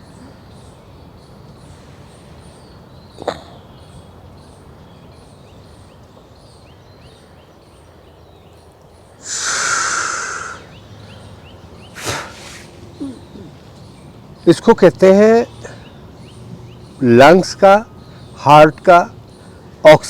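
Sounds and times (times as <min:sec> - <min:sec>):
person breathing in loudly: 0:09.2 - 0:10.7.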